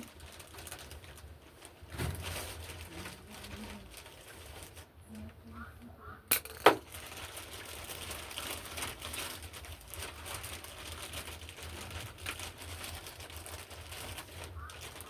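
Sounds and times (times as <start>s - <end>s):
crinkling and light clattering: 0.0s - 5.4s, 6.3s - 15.0s
sharp knocks: 6.3s - 6.8s.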